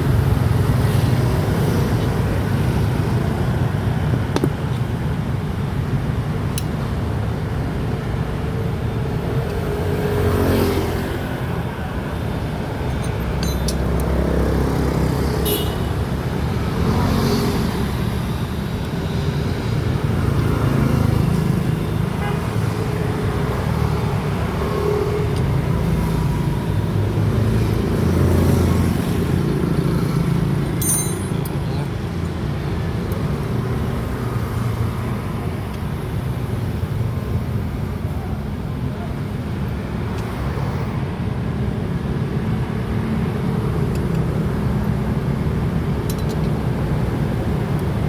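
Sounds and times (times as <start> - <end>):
road traffic noise: 0.0 - 48.0.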